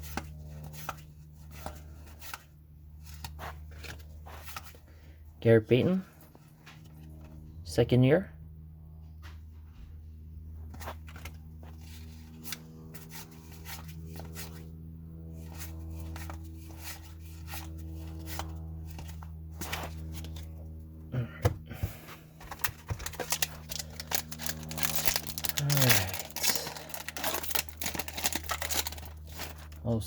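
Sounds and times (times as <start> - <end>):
trading cards flipping: 0.0 - 4.8, 10.6 - 14.7, 15.3 - 20.6, 22.4 - 29.8
steady low hum: 0.0 - 30.0.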